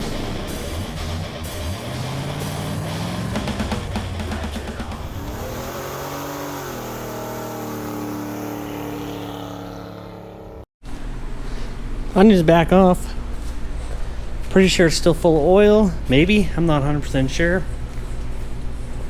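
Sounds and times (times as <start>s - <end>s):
car engine revving: 0.0s - 10.7s.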